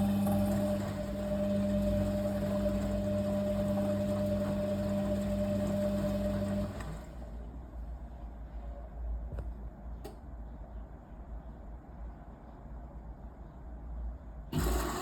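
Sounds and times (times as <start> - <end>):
washing machine humming: 0.0 - 8.2, 14.5 - 15.0.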